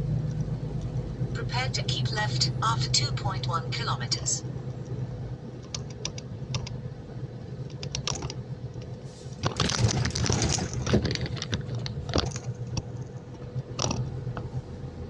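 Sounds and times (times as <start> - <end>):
truck engine low drone: 0.0 - 9.4, 10.8 - 15.0
clicks and rattles: 9.4 - 13.1.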